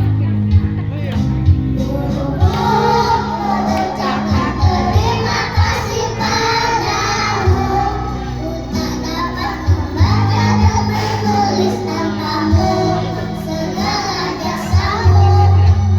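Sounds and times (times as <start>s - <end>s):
music with low beat: 0.0s - 7.9s
children's choir singing: 1.8s - 15.9s.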